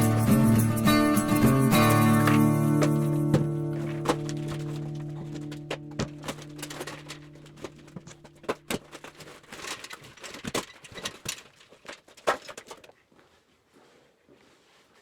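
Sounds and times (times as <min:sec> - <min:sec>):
background music: 0:00.0 - 0:07.0
debris knocking and clattering: 0:00.0 - 0:13.0.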